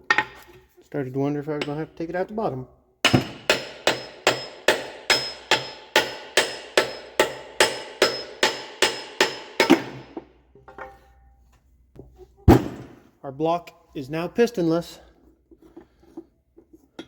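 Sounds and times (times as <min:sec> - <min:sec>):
hammer striking metal: 0:03.0 - 0:10.3.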